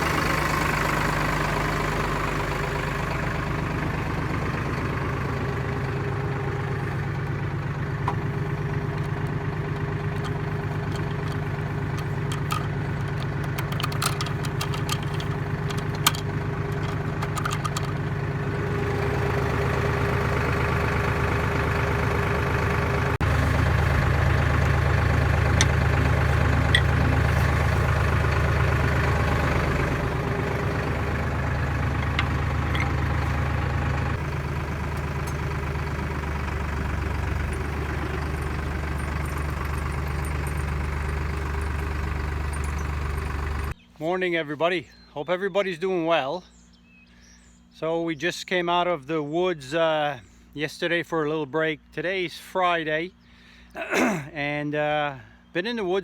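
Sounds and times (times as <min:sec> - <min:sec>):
tractor engine idling: 0:00.0 - 0:43.8.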